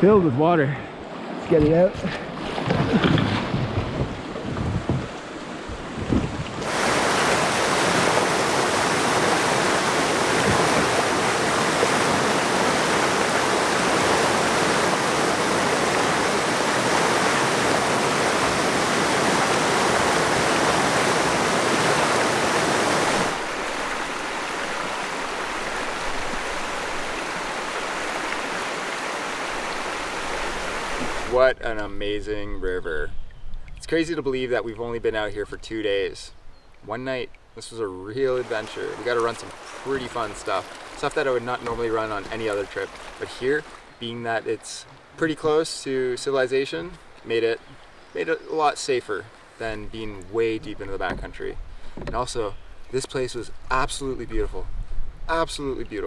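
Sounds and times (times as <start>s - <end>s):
dull low knocks: 2.7s - 5.1s
river water rushing through rapids: 6.6s - 31.4s, 38.4s - 43.8s.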